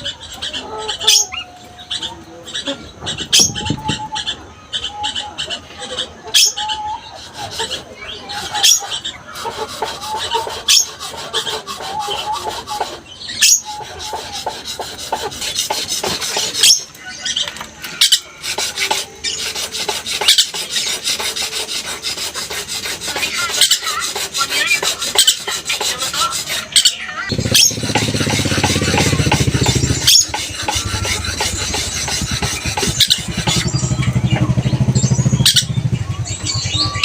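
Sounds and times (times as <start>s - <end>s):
lorikeet screeching: 0.0s - 37.0s.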